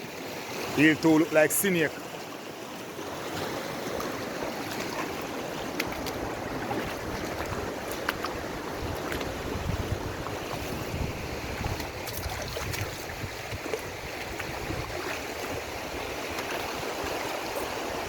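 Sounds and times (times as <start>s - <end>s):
river water rushing: 0.0s - 18.0s
wind on microphone: 5.6s - 18.0s.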